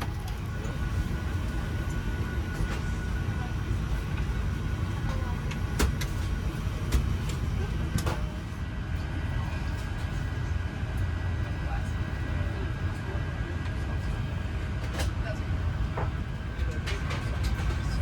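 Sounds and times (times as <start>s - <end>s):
airliner cabin rumble: 0.0s - 18.0s.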